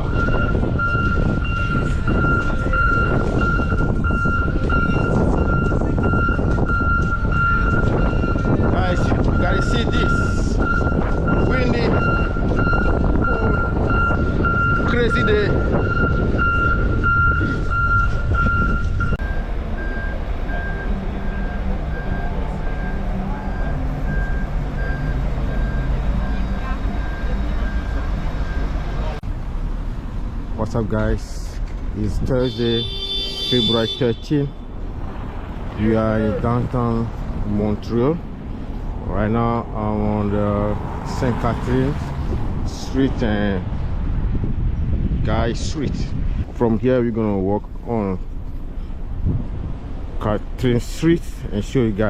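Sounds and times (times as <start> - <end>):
reversing alarm beeping: 0.0 - 8.5, 9.4 - 29.1, 32.4 - 34.7
heavy vehicle engine rumble: 0.0 - 52.0
softer high-pitched beeper: 32.4 - 34.7.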